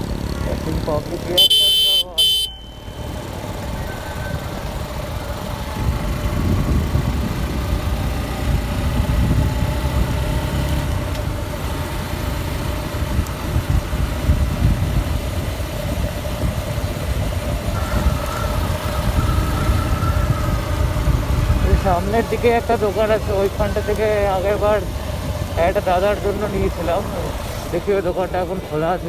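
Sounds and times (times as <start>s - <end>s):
motorcycle engine running: 0.0s - 29.0s
heavy low rumble: 16.4s - 29.0s.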